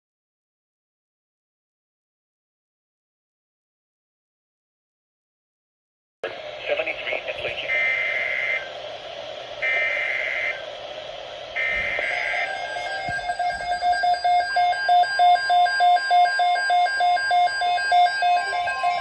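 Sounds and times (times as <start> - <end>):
steady warning tone: 6.2 - 19.0
weather radio alarm beeps: 6.7 - 8.8, 9.6 - 10.8, 11.5 - 19.0
screechy digital data bursts: 7.7 - 8.7, 9.6 - 10.7, 11.5 - 19.0.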